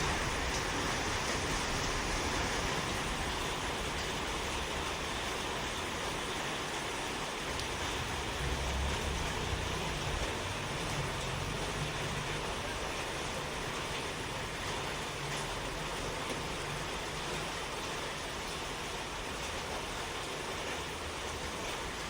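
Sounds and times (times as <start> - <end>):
steady rushing noise with low rumble: 7.7 - 14.6.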